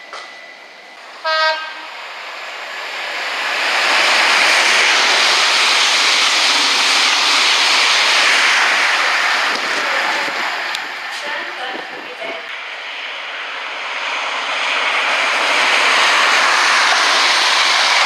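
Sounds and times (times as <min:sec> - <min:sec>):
train rushing past: 0:00.0 - 0:18.0
train horn toot: 0:01.2 - 0:02.0.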